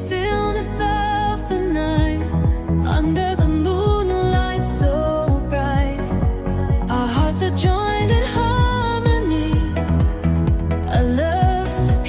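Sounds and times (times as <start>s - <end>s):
pop love song with beat: 0.0s - 12.0s.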